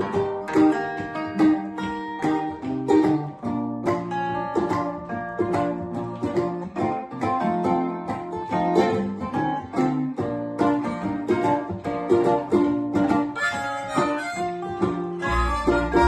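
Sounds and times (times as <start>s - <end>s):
acoustic guitar fingerpicking: 0.0s - 16.0s
harmonica sustained notes: 13.4s - 16.0s.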